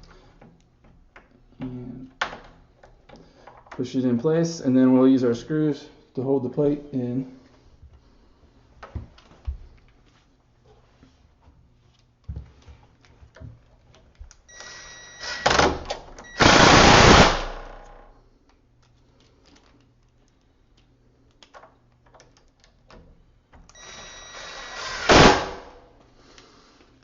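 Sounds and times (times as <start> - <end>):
power drill driving a screw: 14.5 - 17.5, 23.8 - 25.5.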